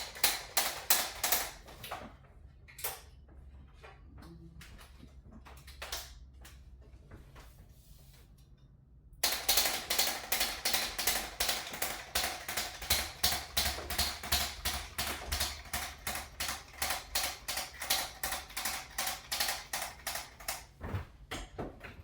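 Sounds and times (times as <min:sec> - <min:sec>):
rapid mechanical clicks: 0:00.0 - 0:01.7, 0:09.2 - 0:20.7.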